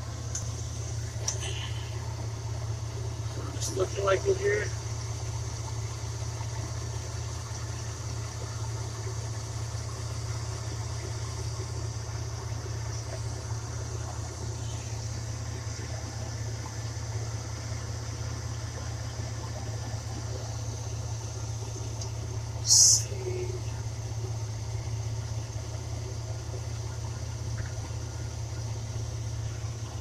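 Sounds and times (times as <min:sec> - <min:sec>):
low machine hum: 0:00.0 - 0:30.0.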